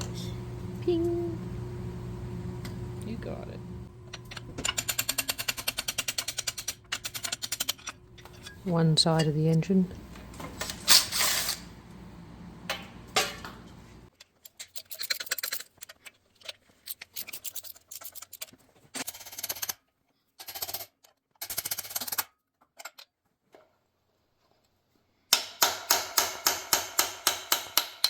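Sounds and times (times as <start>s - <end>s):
low background hum: 0.0s - 18.9s
metal parts and tools clinking: 4.1s - 11.7s, 14.1s - 19.2s.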